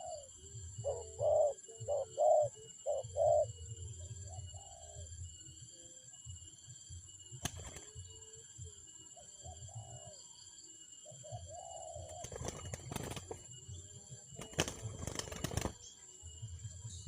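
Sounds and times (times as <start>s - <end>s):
dove cooing: 0.0s - 5.2s, 9.2s - 10.2s, 11.0s - 13.6s, 14.4s - 15.9s.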